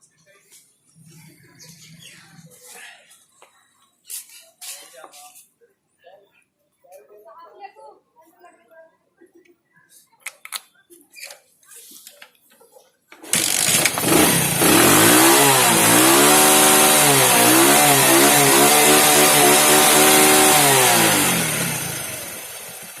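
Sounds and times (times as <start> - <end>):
motorcycle engine revving: 13.2 - 23.0.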